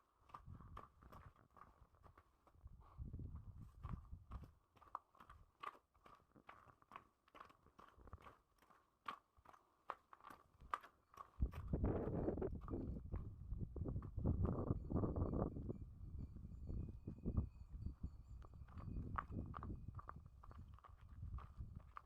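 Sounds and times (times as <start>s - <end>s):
footsteps crunching on snow: 0.2s - 13.0s, 18.7s - 22.0s
wind buffeting microphone: 0.4s - 1.3s, 2.6s - 4.5s, 11.4s - 22.0s.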